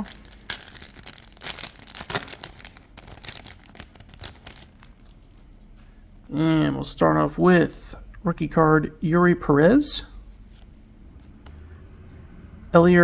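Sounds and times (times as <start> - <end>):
foil wrapper tearing and crinkling: 0.0 - 5.6.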